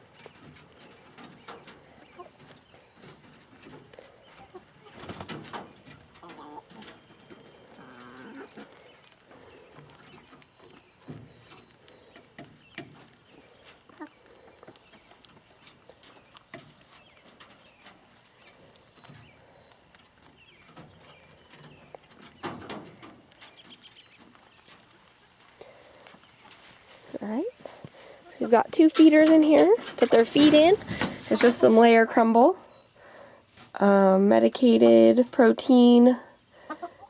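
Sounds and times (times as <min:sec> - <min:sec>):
hens clucking softly: 0:00.0 - 0:31.7, 0:36.4 - 0:37.0
scratching and rustling: 0:00.0 - 0:32.4
loud rustle or knock: 0:29.1 - 0:31.8.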